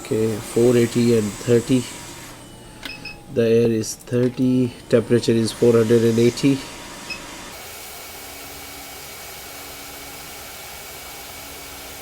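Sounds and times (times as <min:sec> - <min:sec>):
hot air blower hissing: 0:00.0 - 0:12.0.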